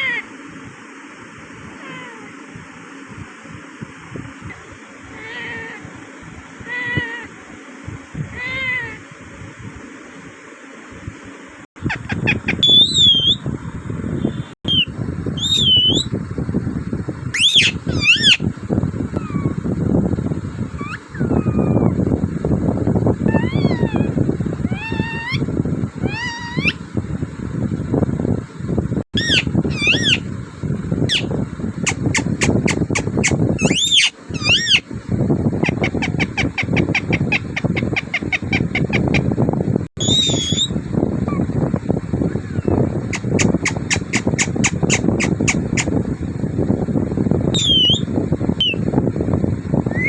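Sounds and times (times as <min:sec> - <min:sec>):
parrot whistling: 0:11.9 - 0:13.4, 0:14.7 - 0:16.1, 0:17.4 - 0:18.4, 0:20.8 - 0:22.0, 0:23.3 - 0:25.4, 0:26.0 - 0:26.8, 0:29.2 - 0:30.2, 0:31.9 - 0:34.8, 0:40.0 - 0:40.8, 0:47.6 - 0:48.8.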